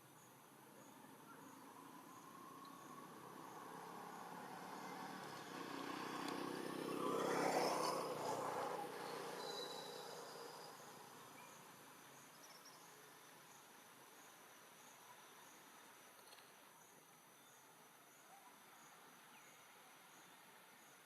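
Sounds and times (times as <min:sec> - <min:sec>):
insects chirring: 0:00.0 - 0:12.8
vehicle passing by: 0:01.7 - 0:11.2.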